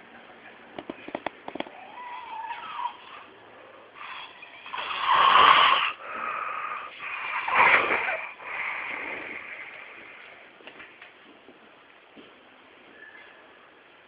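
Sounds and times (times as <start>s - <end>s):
person snoring: 3.9s - 10.2s.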